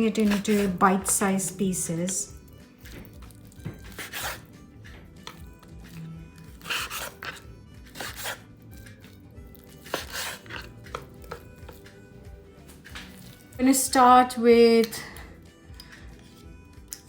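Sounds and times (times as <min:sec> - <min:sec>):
knife slicing chicken: 0:00.0 - 0:01.1, 0:02.8 - 0:04.6, 0:05.2 - 0:11.8.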